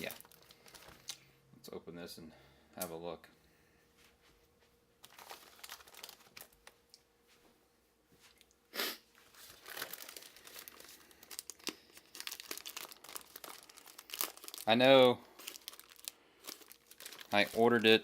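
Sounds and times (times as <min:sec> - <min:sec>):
packaging crinkling and tearing: 0:00.0 - 0:01.2, 0:05.0 - 0:06.8, 0:09.3 - 0:18.0
packaging ripping: 0:05.0 - 0:06.7, 0:09.3 - 0:17.9.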